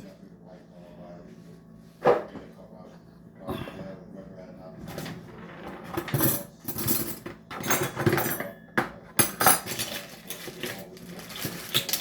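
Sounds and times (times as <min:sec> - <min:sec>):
metal cutlery clattering: 0:04.9 - 0:12.0.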